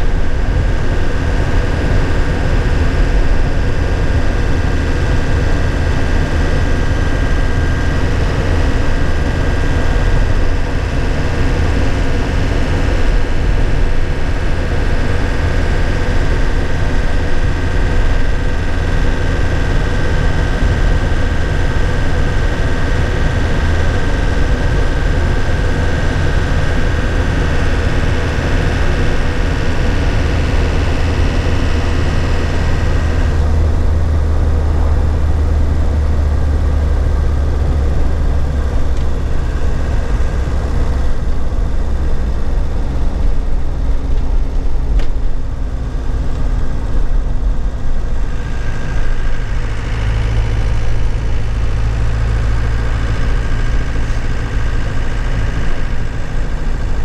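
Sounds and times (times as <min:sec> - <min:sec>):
truck engine running inside cab: 0:00.0 - 0:57.0.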